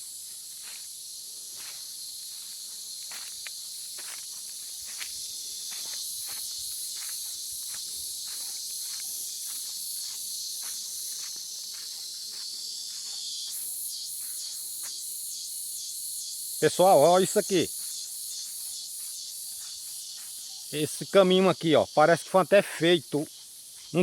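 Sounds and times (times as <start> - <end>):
cicadas buzzing: 0.0 - 24.0
soft footsteps: 1.5 - 15.0.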